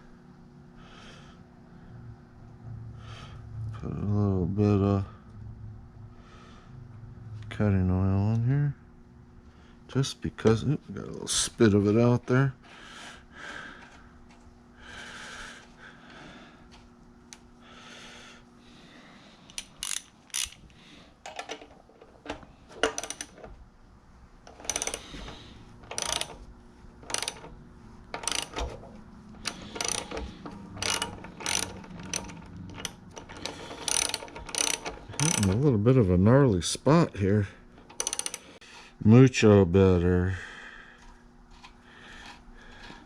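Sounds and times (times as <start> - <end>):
socket ratchet clicking: 19.5 - 20.7, 22.8 - 23.4, 24.5 - 26.4, 27.0 - 35.6, 37.8 - 38.6
soft scraping and handling: 41.0 - 43.0.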